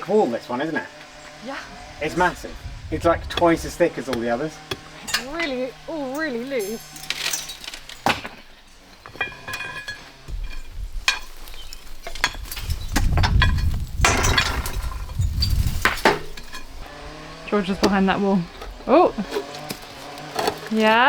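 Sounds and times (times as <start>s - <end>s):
low rumble: 1.0s - 6.2s, 10.3s - 18.9s.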